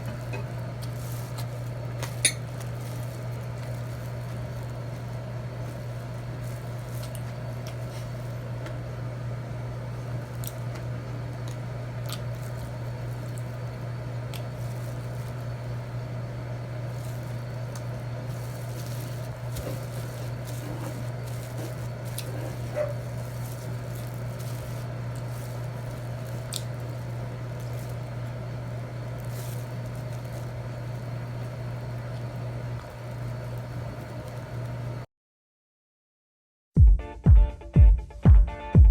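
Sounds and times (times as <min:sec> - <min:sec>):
steady low hum: 0:00.0 - 0:35.1
utensils tapping on plate: 0:02.1 - 0:02.6
chewing: 0:11.4 - 0:13.6, 0:18.6 - 0:28.1.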